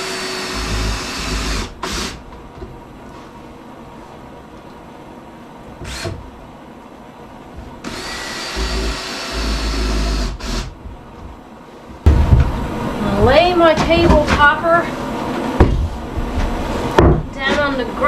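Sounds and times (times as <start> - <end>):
power drill driving screws into wood: 0.0 - 2.2, 7.8 - 10.7.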